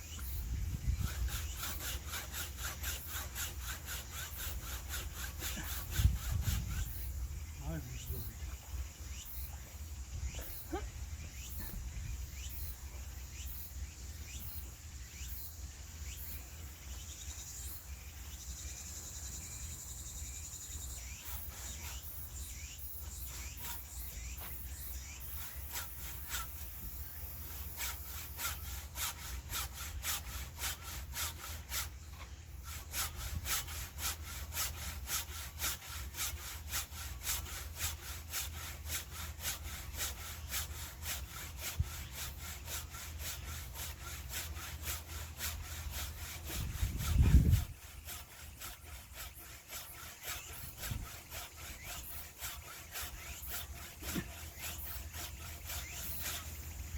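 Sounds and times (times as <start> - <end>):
hand saw cutting log: 0.1 - 9.6, 20.8 - 56.9.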